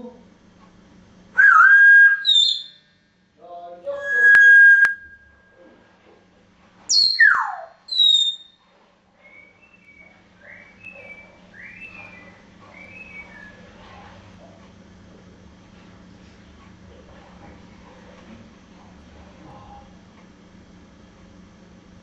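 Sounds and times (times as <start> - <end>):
parrot chirping: 1.4 - 2.8, 3.9 - 5.3, 6.9 - 8.5, 9.3 - 13.7
parrot whistling: 1.4 - 2.8, 3.9 - 5.5, 6.9 - 8.5, 9.2 - 13.7.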